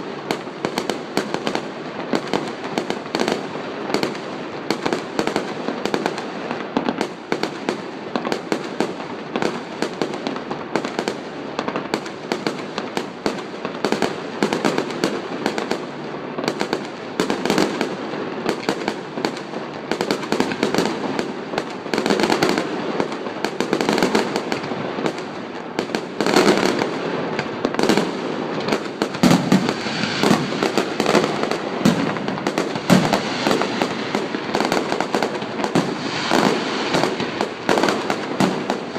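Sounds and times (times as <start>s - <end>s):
fireworks bangs and crackles: 0.0s - 38.9s
deep fireworks booms: 11.6s - 38.9s.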